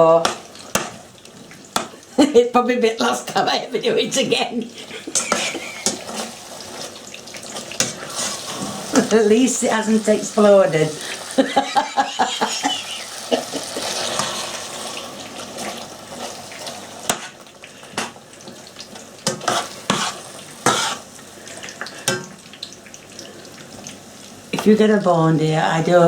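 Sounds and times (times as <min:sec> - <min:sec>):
chicken sizzling in a pan: 0:00.0 - 0:26.0
spoon scraping and knocking pan: 0:13.8 - 0:16.4, 0:17.0 - 0:17.4, 0:19.2 - 0:21.0.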